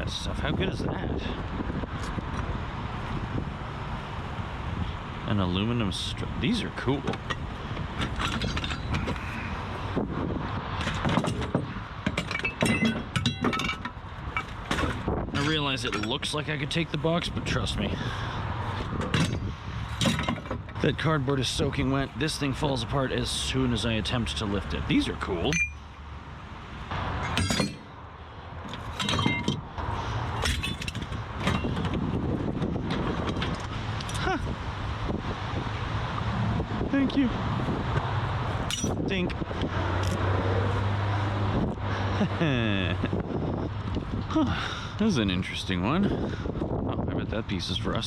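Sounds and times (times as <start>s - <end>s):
scrap metal clanking: 7.1s - 10.0s, 10.8s - 16.4s, 18.7s - 20.8s, 27.2s - 27.9s, 28.7s - 32.0s
ringing metallic clinks: 25.5s - 25.9s, 38.7s - 39.0s.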